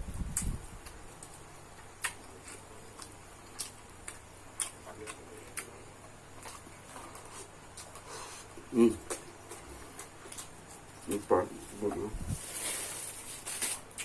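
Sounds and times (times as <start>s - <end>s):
soft eating clicks: 0.3s - 8.1s, 8.8s - 11.4s.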